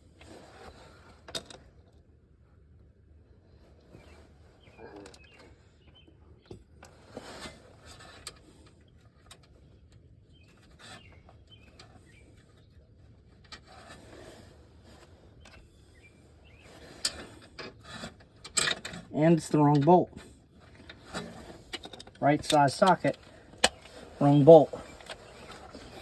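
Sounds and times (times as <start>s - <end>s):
metal tools clinking: 20.8s - 26.0s.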